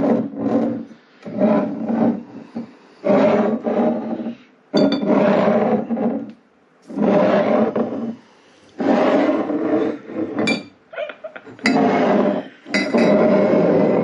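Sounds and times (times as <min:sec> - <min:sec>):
glass bottle clink: 0:10.4 - 0:10.8, 0:12.7 - 0:13.2.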